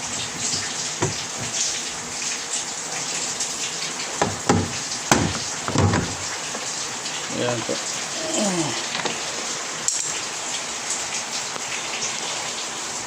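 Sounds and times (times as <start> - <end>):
water running: 0.0 - 13.0
sharp knocks: 1.0 - 1.6, 4.2 - 6.6.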